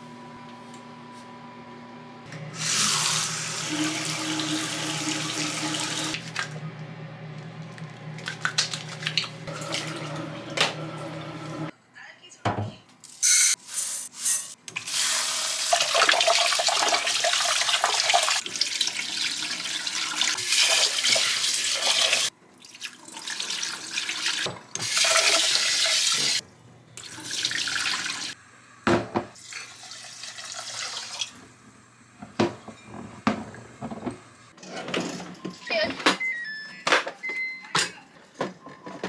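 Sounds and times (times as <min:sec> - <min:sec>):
tap water running into sink: 0:02.3 - 0:06.6, 0:07.7 - 0:11.7, 0:14.7 - 0:26.4, 0:27.0 - 0:31.5.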